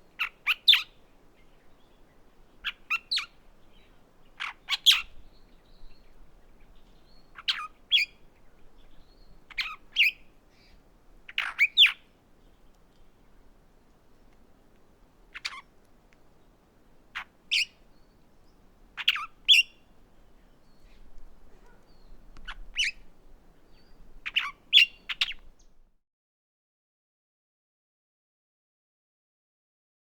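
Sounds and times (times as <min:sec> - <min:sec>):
mockingbird chirping: 0:00.1 - 0:00.9, 0:02.6 - 0:12.8, 0:15.3 - 0:15.7, 0:17.2 - 0:25.8.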